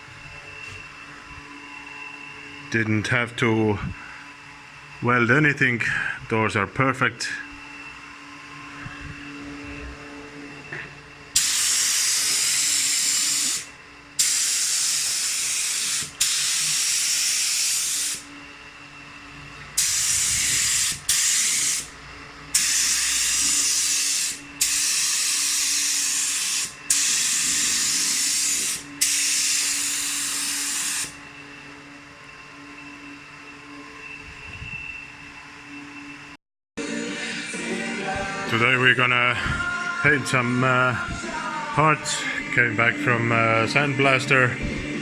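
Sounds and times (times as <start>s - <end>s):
faint steady hum: 0.0s - 36.4s
air spray gun hissing: 11.3s - 18.3s, 19.8s - 31.2s.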